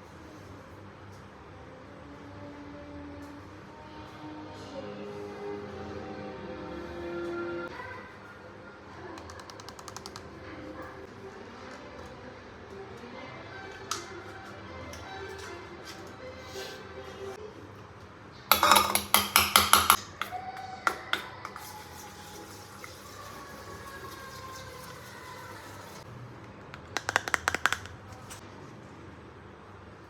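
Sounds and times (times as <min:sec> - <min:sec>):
kitchenware clattering and clinking: 0:18.5 - 0:26.0.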